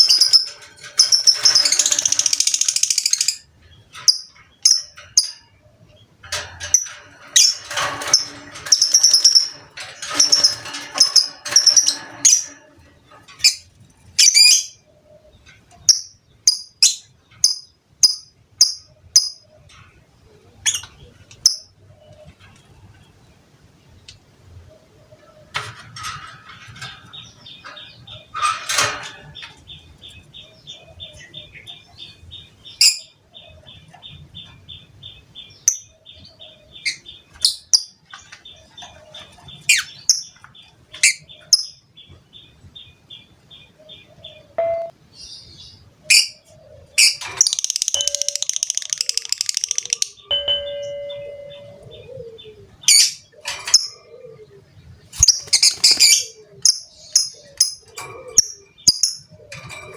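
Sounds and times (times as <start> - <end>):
lovebird chattering trill: 0.0 - 3.4, 47.0 - 50.3
lovebird ticks and chirps: 0.0 - 5.5, 47.0 - 52.1.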